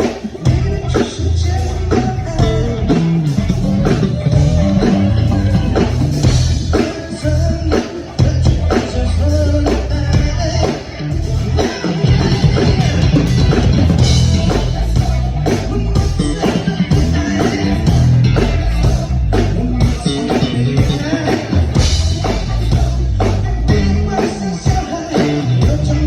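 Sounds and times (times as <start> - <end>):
electric bass notes: 0.0 - 26.0
higher melodic line: 0.5 - 6.8.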